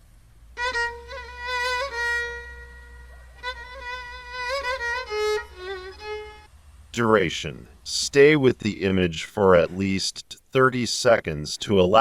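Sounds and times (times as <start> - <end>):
violin playing held notes: 0.6 - 6.5.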